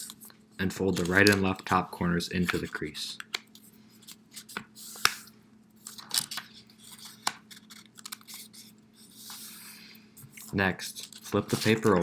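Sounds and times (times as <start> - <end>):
paper rustling and crackling: 0.0 - 5.2, 5.8 - 9.6, 10.2 - 12.0.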